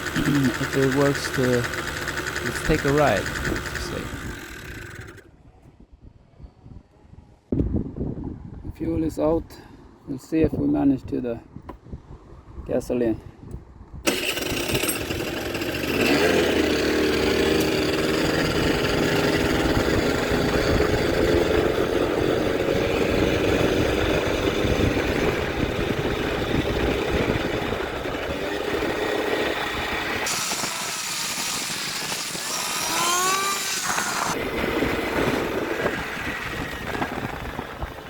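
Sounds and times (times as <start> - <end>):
scooter engine pulling away: 0.0 - 5.3, 14.1 - 38.0
hiss: 30.3 - 34.4.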